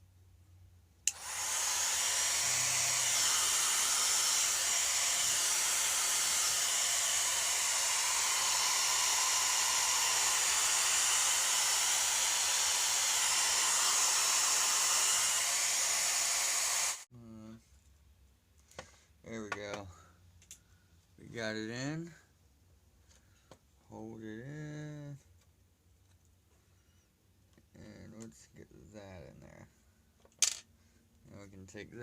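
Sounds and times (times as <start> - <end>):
hair dryer switch click: 1.1 - 1.7
hair dryer running: 1.1 - 17.1.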